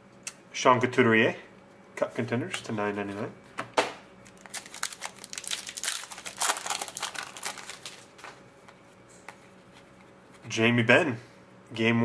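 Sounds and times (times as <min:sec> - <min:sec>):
foil wrapper crinkling: 0:04.2 - 0:08.4.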